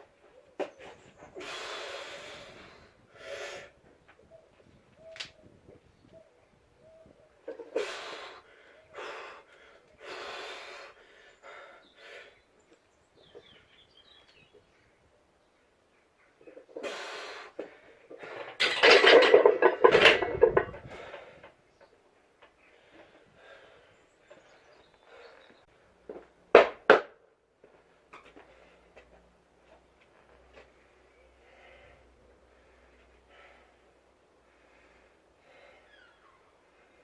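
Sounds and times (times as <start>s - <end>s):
person breathing heavily: 1.3s - 3.9s, 7.6s - 12.5s, 22.6s - 25.6s, 31.3s - 37.0s.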